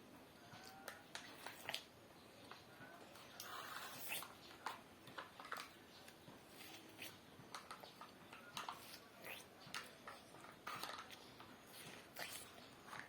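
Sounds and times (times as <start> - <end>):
wet chewing and lip-smacking: 0.6 - 2.0, 3.1 - 13.0
noodle slurp: 1.2 - 1.9, 3.2 - 4.6, 6.4 - 7.2, 8.6 - 13.0.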